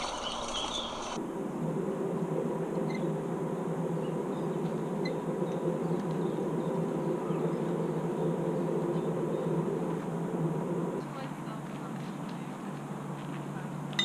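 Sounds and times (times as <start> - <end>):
boat engine droning: 0.0 - 1.2.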